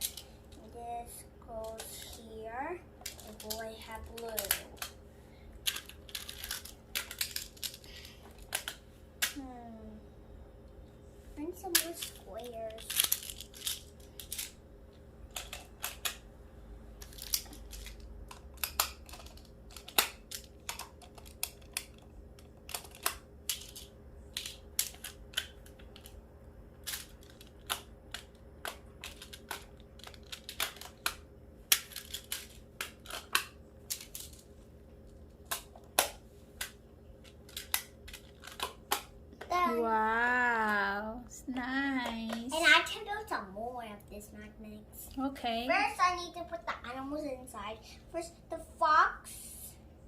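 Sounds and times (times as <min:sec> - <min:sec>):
plastic tiles clicking together: 0:17.0 - 0:26.1.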